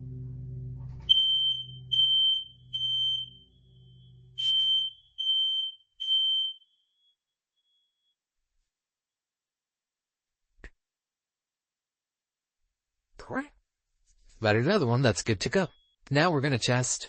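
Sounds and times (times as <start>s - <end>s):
smoke detector beeping: 1.1s - 8.2s.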